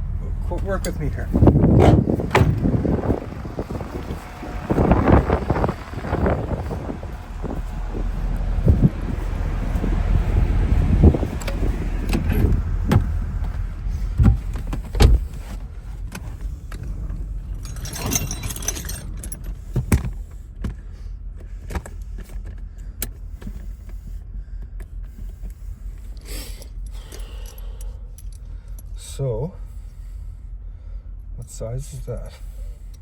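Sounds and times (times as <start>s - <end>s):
low rumble: 0.0s - 20.5s
rustling metal jangle: 17.3s - 19.8s, 26.8s - 29.0s.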